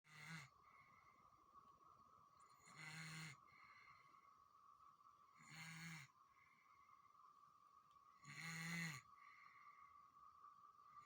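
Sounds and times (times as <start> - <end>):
baby snoring softly: 0.1 - 0.6, 5.4 - 6.2, 8.2 - 9.1.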